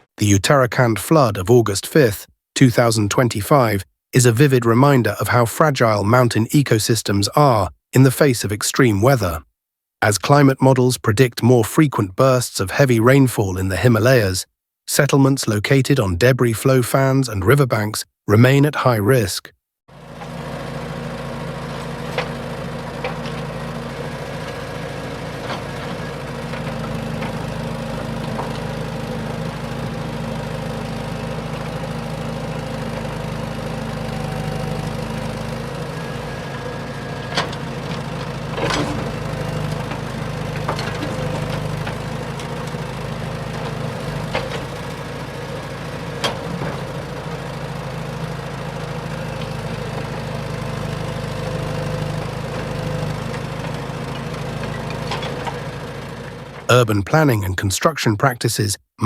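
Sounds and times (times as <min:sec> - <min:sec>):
motor engine running: 0:19.9 - 0:56.7.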